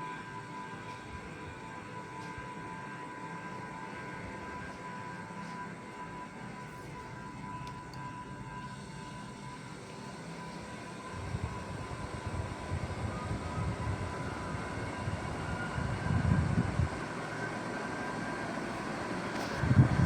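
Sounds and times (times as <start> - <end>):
ceiling fan humming: 0.0 - 20.0
rumble of moving air: 11.1 - 17.2, 18.8 - 20.0.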